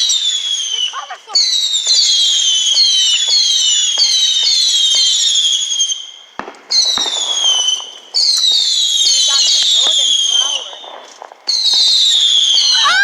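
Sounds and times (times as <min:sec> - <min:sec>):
whistling fireworks: 0:00.0 - 0:13.0
firework pops: 0:06.4 - 0:12.9.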